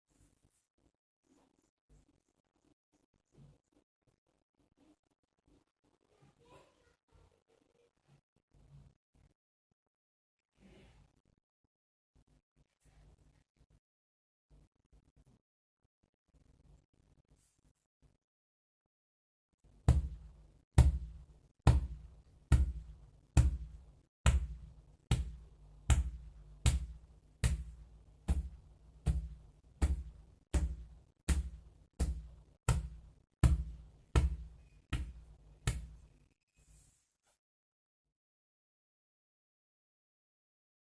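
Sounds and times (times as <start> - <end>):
hand patting on body: 19.9 - 36.0.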